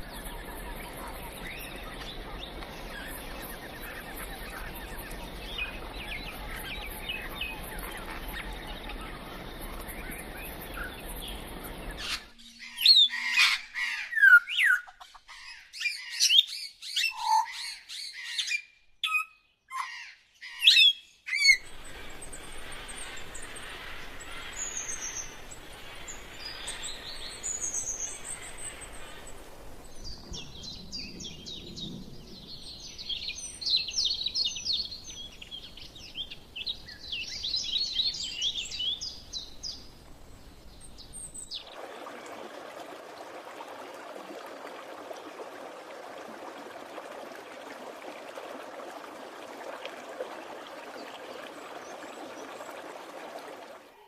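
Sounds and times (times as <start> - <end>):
birds calling: 0.0 - 31.7
birds chirping: 0.0 - 42.6
forest hiss: 21.6 - 33.9.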